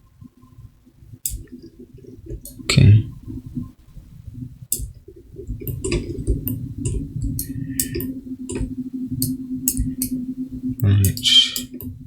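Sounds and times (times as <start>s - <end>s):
low steady hum: 0.0s - 12.0s
computer mouse clicking: 1.3s - 1.6s, 5.6s - 10.2s, 11.0s - 11.9s.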